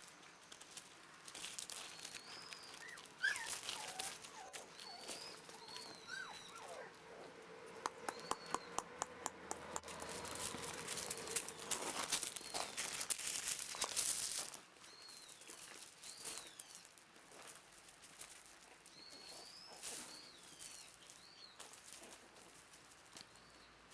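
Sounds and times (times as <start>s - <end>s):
puppies whimpering: 2.1s - 7.4s.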